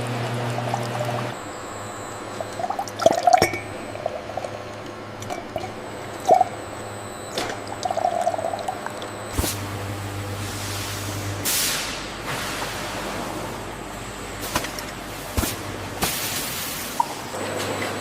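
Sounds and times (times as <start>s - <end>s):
liquid pouring and dripping: 7.6s - 9.1s.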